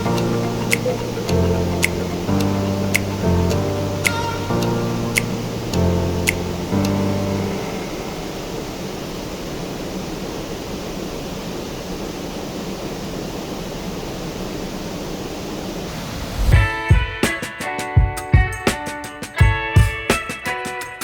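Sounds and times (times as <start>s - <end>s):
music with plucked notes: 0.0s - 7.8s, 16.6s - 21.0s
waterfall roaring: 0.0s - 16.6s.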